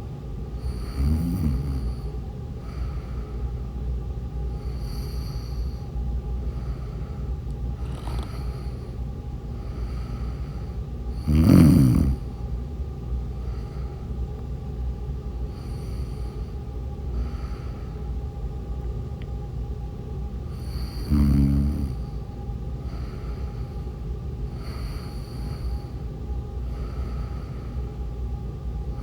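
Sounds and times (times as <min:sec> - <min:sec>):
woman snoring: 0:00.6 - 0:02.1, 0:04.6 - 0:05.8, 0:11.2 - 0:12.3, 0:20.5 - 0:22.1
soft breathing: 0:00.6 - 0:03.7, 0:04.5 - 0:12.4, 0:13.3 - 0:14.4, 0:15.4 - 0:18.3, 0:20.4 - 0:28.2.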